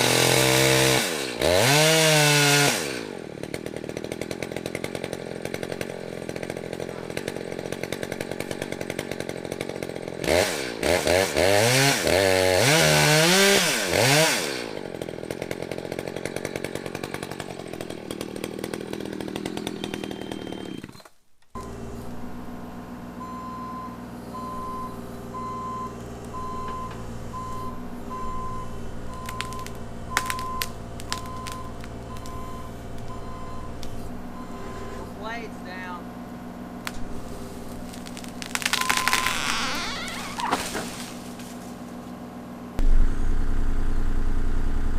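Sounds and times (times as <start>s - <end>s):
chainsaw revving: 0.0s - 21.0s, 26.3s - 42.1s
engine running steadily: 3.0s - 10.8s, 21.6s - 44.9s.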